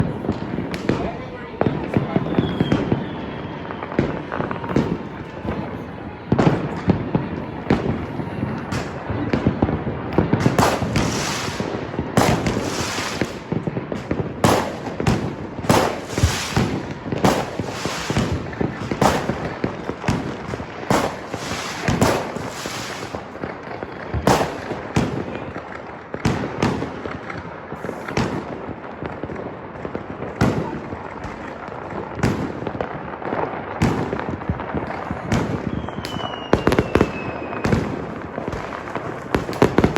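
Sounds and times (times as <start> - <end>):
fireworks and firecrackers banging: 0.0 - 39.9.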